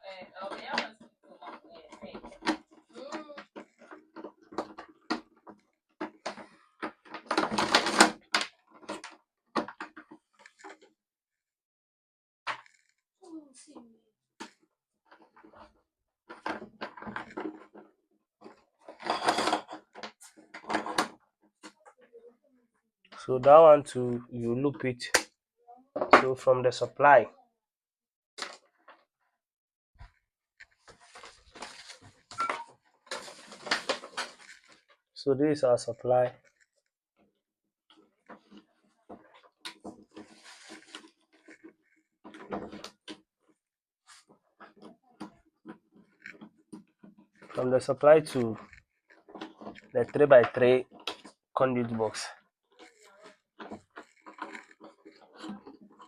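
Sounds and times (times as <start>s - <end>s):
cable rustling and scraping: 0.4s - 10.9s, 12.5s - 13.0s, 14.4s - 22.1s, 30.0s - 37.0s, 37.9s - 56.0s.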